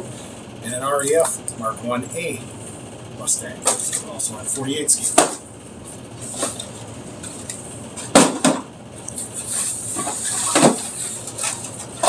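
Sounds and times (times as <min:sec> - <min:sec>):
boxes sliding and scraping: 0:06.2 - 0:08.1, 0:09.2 - 0:12.0
cardboard boxes knocking: 0:08.1 - 0:08.7.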